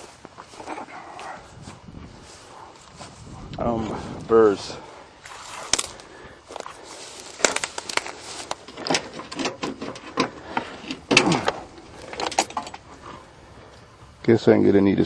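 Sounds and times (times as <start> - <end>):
clicks and knocks of handling: 5.7 - 12.9.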